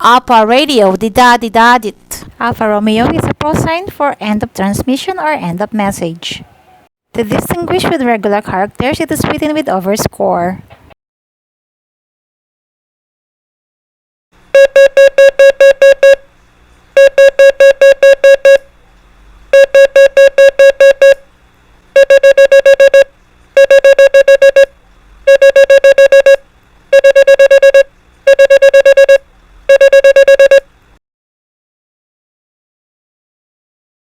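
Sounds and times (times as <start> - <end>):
morse code tone dits: 14.6 - 16.2, 17.0 - 18.7, 19.5 - 21.2, 22.0 - 30.7.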